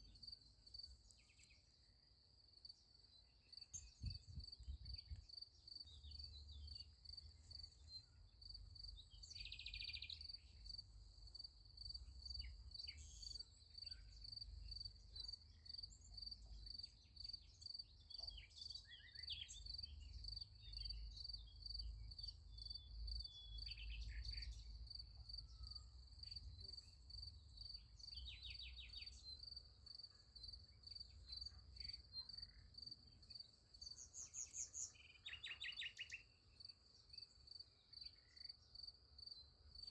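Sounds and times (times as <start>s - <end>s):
crickets chirping: 19.7s - 39.9s.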